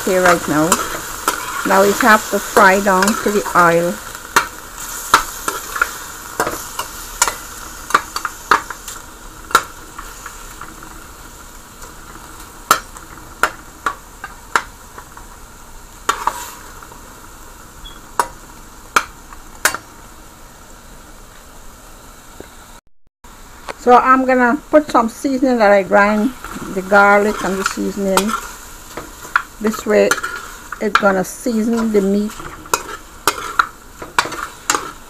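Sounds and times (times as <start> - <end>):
meat sizzling in oil: 0.0 - 22.1, 23.4 - 35.0
utensil scraping a pan: 0.6 - 3.8, 26.4 - 35.0.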